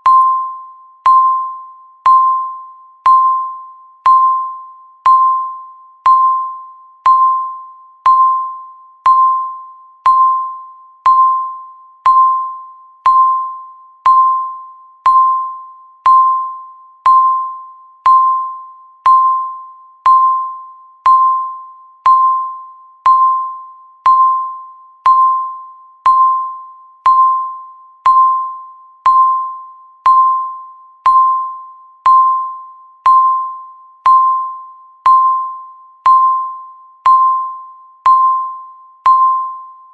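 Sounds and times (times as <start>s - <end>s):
countdown timer beeping: 0.0s - 39.9s.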